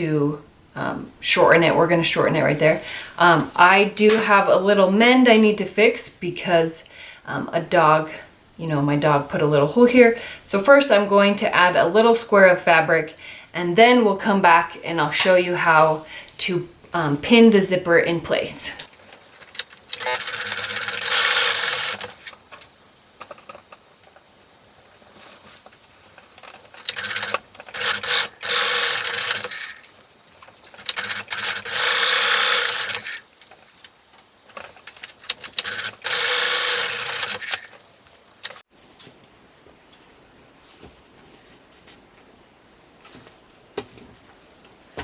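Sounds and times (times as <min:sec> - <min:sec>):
sewing machine stitching: 0:19.4 - 0:22.4, 0:26.5 - 0:33.3, 0:34.5 - 0:37.8
small clicks: 0:25.7 - 0:38.6.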